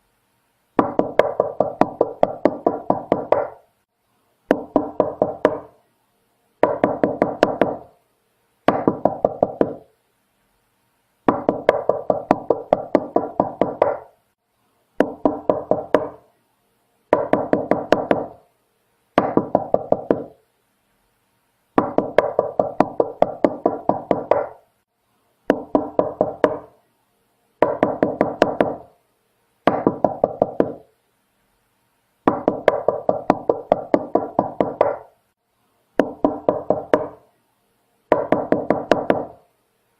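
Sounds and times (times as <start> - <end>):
rapid knocking on a door: 0.8 - 3.6, 4.5 - 5.7, 6.6 - 7.9, 8.7 - 9.9, 11.3 - 14.1, 15.0 - 16.2, 17.1 - 18.4, 19.2 - 20.4, 21.8 - 24.6, 25.5 - 26.7, 27.6 - 28.9, 29.7 - 30.8, 32.3 - 35.1, 36.0 - 37.2, 38.1 - 39.4.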